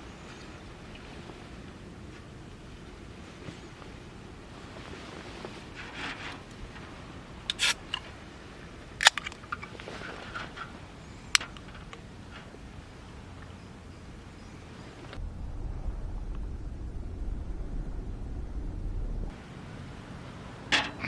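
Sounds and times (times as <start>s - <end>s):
faint hiss: 10.2s - 21.0s
low rumble: 15.2s - 20.2s.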